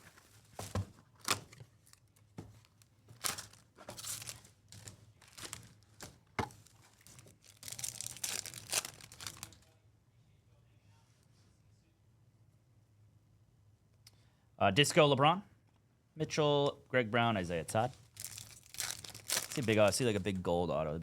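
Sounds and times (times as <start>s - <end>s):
wrappers ripping and crinkling: 0.6s - 9.7s, 17.8s - 20.2s.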